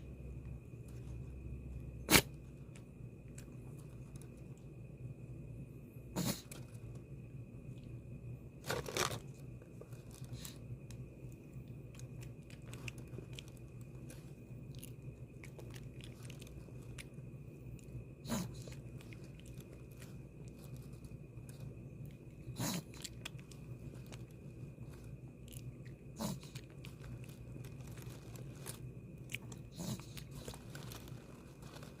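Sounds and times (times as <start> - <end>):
dog crunching food: 8.6 - 32.0.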